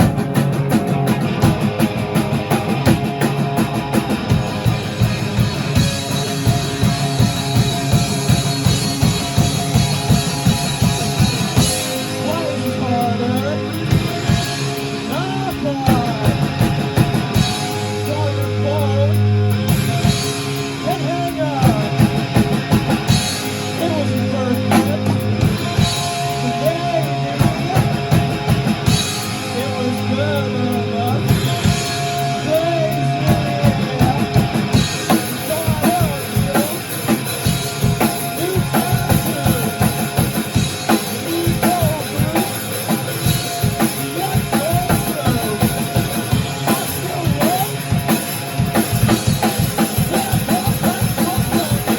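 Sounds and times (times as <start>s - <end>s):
drum kit: 0.0s - 51.9s
electric guitar: 0.0s - 51.9s
low bass notes: 0.0s - 51.9s
person singing: 11.6s - 19.4s, 23.6s - 51.9s.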